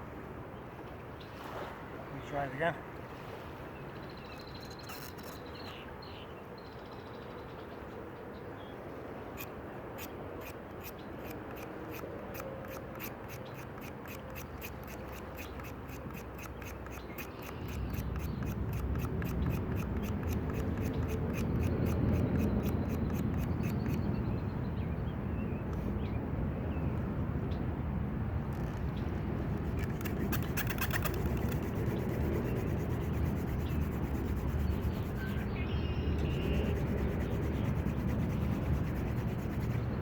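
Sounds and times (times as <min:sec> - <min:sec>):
hand drill spindle clicking: 0:04.7 - 0:05.4, 0:10.0 - 0:24.0, 0:29.5 - 0:35.4.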